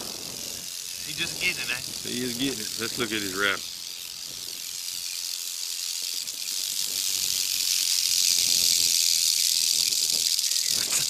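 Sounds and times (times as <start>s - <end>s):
rattlesnake tail rattle buzzing: 0.0s - 11.0s.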